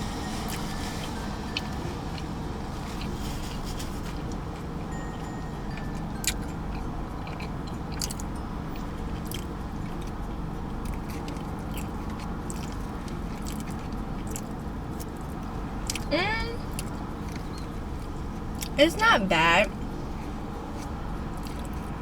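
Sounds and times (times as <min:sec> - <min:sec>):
person chewing food: 0:00.5 - 0:08.4, 0:09.1 - 0:16.1, 0:20.1 - 0:22.0.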